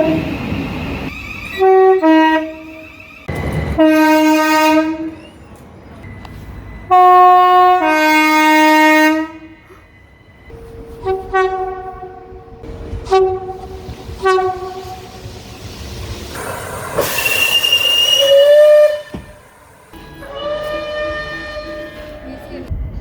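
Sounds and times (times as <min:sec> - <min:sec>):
train noise with high tones: 0:00.0 - 0:23.0
train horn blasts: 0:01.6 - 0:02.8, 0:03.8 - 0:05.2, 0:06.9 - 0:09.6, 0:10.6 - 0:15.1, 0:17.0 - 0:22.7.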